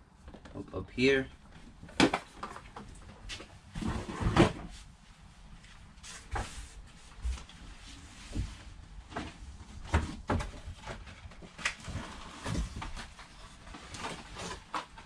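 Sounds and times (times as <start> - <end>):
boxes and packaging handled: 8.4 - 15.0.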